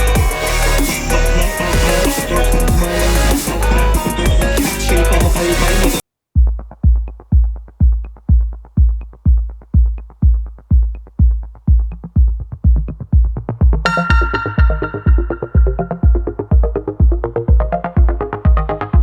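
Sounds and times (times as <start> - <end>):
electronic music: 0.0 - 6.0, 9.1 - 19.0
synthesizer tones: 0.0 - 6.0, 13.8 - 19.0
drum machine bass kick: 0.0 - 19.0.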